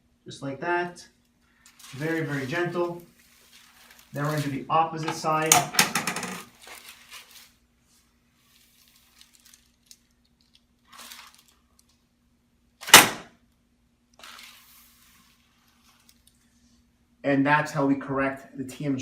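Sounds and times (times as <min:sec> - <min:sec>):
faint rustling: 0:01.3 - 0:05.2
drop table clunk: 0:05.5 - 0:06.4.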